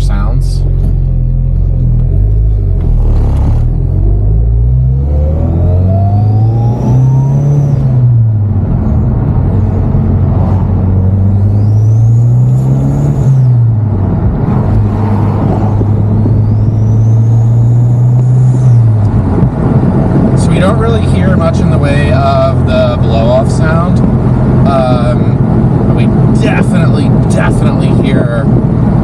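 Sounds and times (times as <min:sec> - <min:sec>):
car engine accelerating hard: 0:00.0 - 0:29.0
high turbo whistle: 0:05.4 - 0:08.0, 0:11.3 - 0:13.5, 0:15.6 - 0:18.8.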